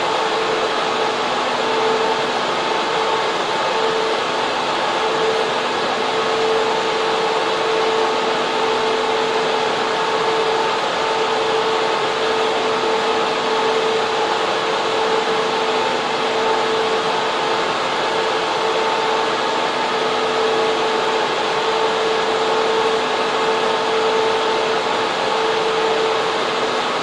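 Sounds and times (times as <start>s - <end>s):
server fans rushing air: 0.0s - 27.0s.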